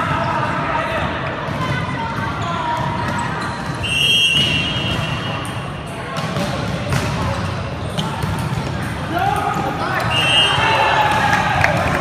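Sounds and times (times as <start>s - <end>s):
chatter of players and spectators: 0.0s - 12.0s
referee's whistle: 3.8s - 5.6s, 10.0s - 10.9s.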